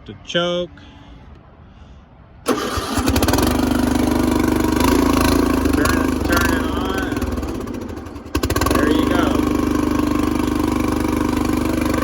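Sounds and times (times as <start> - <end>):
lawn tractor engine running: 2.5 - 12.0.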